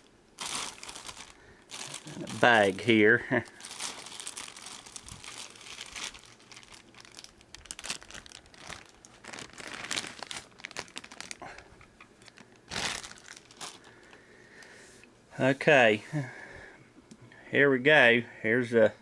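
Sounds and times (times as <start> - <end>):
plastic bag crinkling: 0.0 - 14.2.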